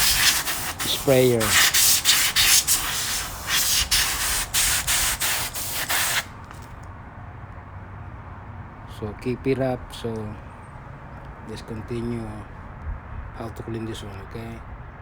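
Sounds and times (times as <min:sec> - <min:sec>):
compressed air hissing in bursts: 0:00.0 - 0:06.7.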